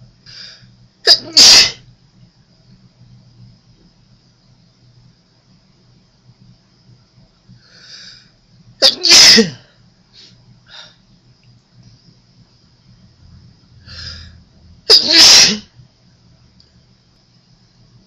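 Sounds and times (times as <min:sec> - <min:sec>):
person sneezing: 0:01.1 - 0:01.8, 0:08.8 - 0:09.6, 0:13.9 - 0:15.7.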